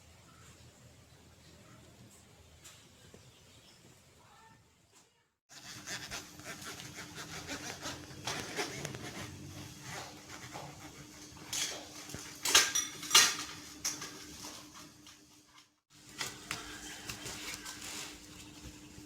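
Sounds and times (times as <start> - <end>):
rubbing and rustling: 5.5 - 12.4, 13.6 - 18.8.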